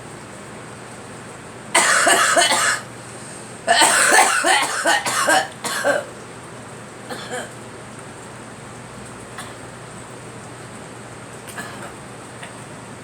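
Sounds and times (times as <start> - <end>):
girl coughing: 1.8 - 2.9, 3.7 - 6.1, 7.1 - 7.5, 11.5 - 12.0.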